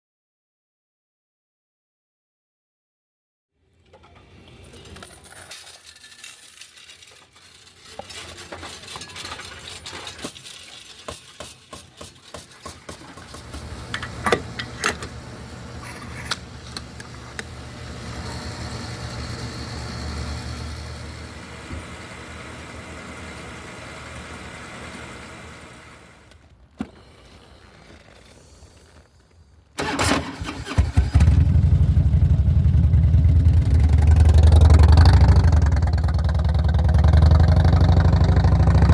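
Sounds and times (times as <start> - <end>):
clicks and clatter: 3.8 - 15.2
motorcycle engine idling: 31.2 - 38.9.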